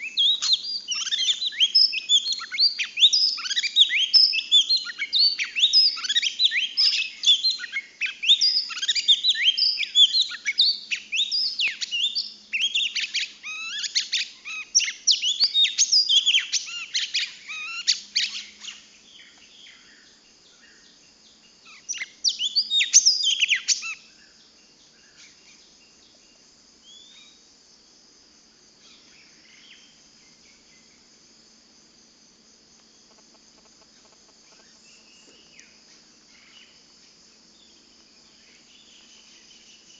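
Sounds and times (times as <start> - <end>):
songbird chirping and whistling: 0.0 - 20.0, 21.7 - 24.0
faint high insect drone: 0.0 - 39.9.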